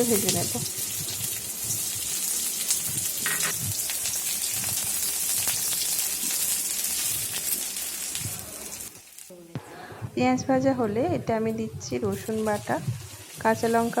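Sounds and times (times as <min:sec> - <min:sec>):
food sizzling in oil: 0:00.0 - 0:09.5, 0:11.9 - 0:14.0.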